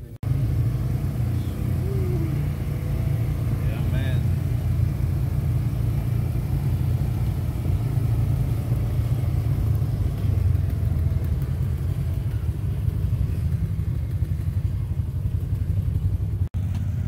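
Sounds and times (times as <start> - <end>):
vehicle engine rumbling: 0.0 - 17.0.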